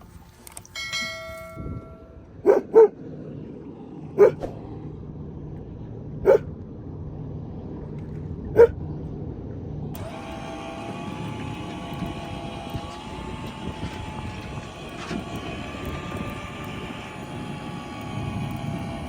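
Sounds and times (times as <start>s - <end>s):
steady low hum: 0.0s - 19.0s
ringing chime-like tone: 0.7s - 2.3s
dog barking: 2.4s - 3.0s, 4.2s - 4.4s, 6.2s - 6.5s, 8.6s - 8.8s.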